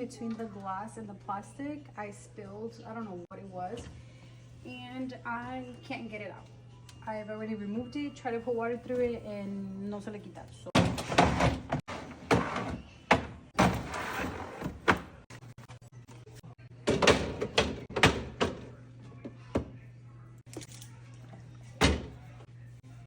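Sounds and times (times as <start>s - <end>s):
fridge shelf knocking: 10.8s - 13.9s, 16.9s - 18.7s.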